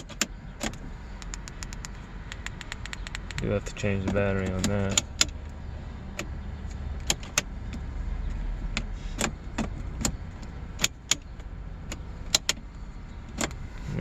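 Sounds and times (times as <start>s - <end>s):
sharp plastic clicks: 0.0s - 5.4s.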